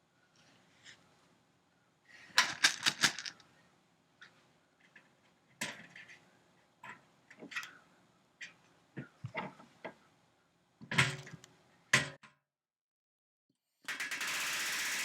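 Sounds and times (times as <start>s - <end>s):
tools clicking and knocking: 2.4s - 3.4s.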